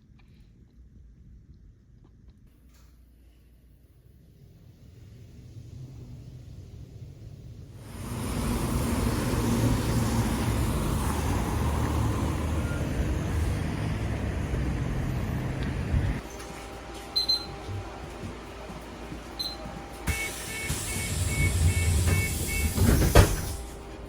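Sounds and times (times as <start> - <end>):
rushing noise: 5.0 - 16.2
vehicle engine and road hum: 7.8 - 24.0.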